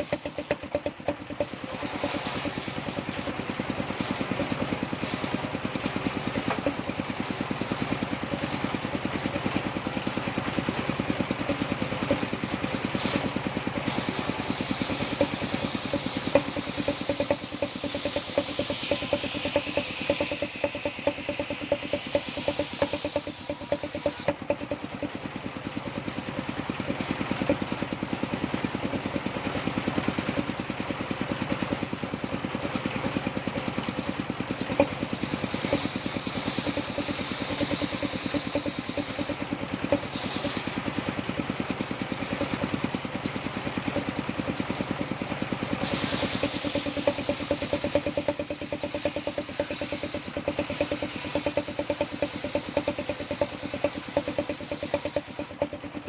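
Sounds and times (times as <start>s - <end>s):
saw blade cutting wood: 0.0s - 7.0s, 11.1s - 24.8s, 34.6s - 41.0s, 45.7s - 56.0s
circular saw engine running: 0.0s - 56.0s.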